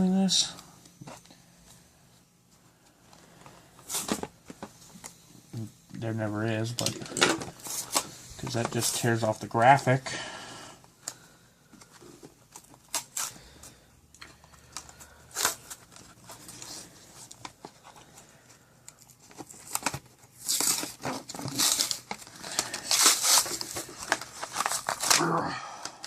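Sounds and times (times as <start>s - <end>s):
cardboard tearing and crinkling: 12.5s - 13.4s, 15.1s - 17.6s, 19.2s - 25.6s.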